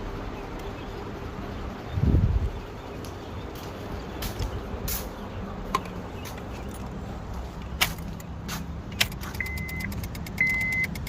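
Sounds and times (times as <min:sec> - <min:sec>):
sharp clicks: 0:07.6 - 0:11.0.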